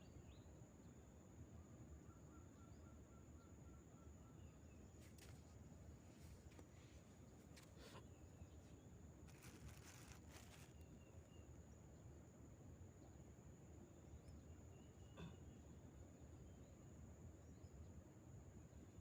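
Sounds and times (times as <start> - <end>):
soft rustles: 5.0 - 11.0.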